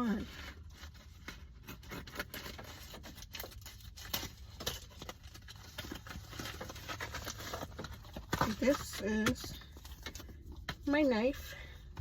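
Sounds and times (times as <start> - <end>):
packaging tearing and crinkling: 0.2 - 10.4.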